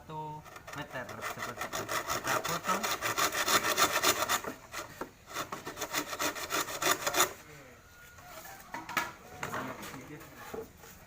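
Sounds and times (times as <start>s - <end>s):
hand saw cutting bamboo: 0.2s - 7.4s.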